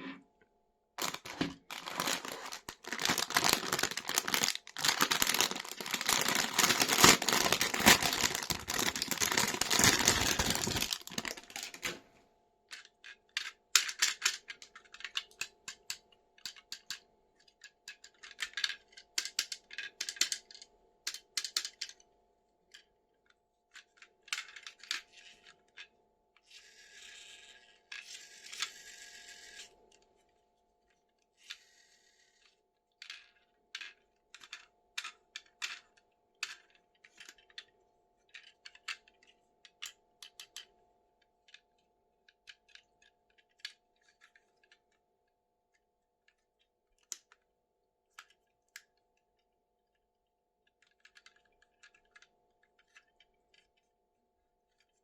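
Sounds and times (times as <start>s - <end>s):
packaging rustling: 1.0s - 12.0s.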